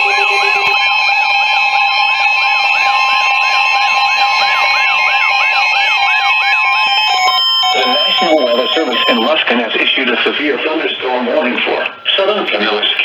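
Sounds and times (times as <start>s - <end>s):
siren rising whoop: 0.0s - 9.3s
steady alarm tones: 0.0s - 11.0s.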